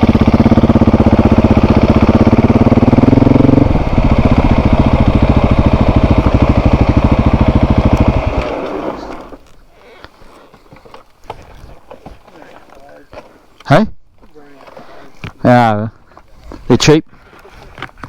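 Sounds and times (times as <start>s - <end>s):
motorcycle engine running: 0.0s - 9.5s.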